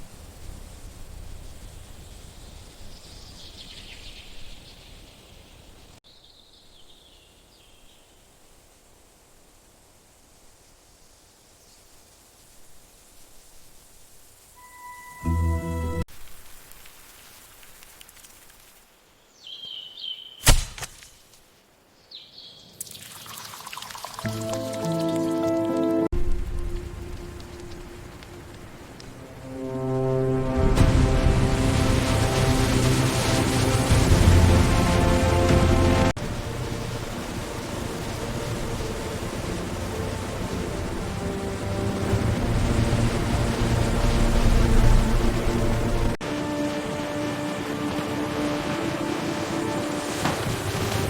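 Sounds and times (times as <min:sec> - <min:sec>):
light rain dripping: 0:00.0 - 0:06.0, 0:16.0 - 0:19.8, 0:22.6 - 0:51.0.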